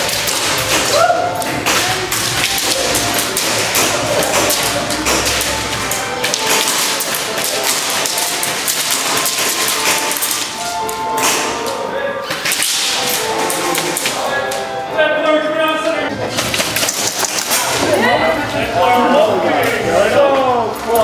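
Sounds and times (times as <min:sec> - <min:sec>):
pellets striking surfaces: 0:00.0 - 0:14.2.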